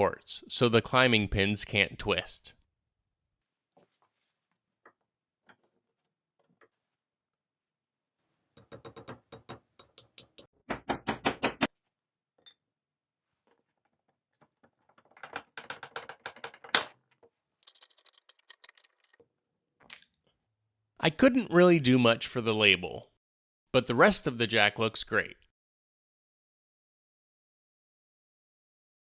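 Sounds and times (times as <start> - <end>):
jack mechanism clicking and rattling: 8.6 - 10.5, 17.6 - 19.2.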